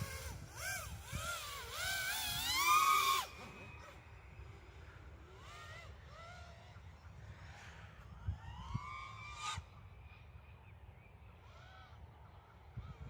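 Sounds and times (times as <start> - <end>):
drone motors and propellers whining: 0.0 - 10.1.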